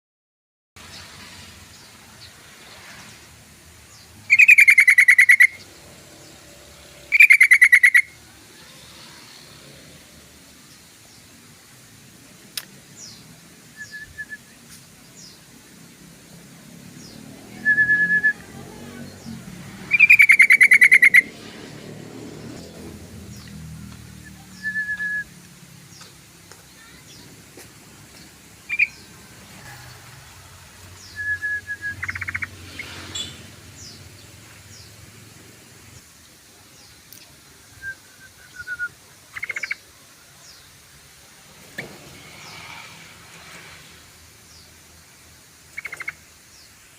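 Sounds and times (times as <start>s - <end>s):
bird calling with rapid trill: 4.3s - 5.7s, 7.1s - 8.2s, 19.8s - 21.4s, 28.7s - 29.1s, 31.0s - 34.0s
faint high bird chirps: 28.7s - 29.1s
faint high falling whistles: 31.0s - 32.1s.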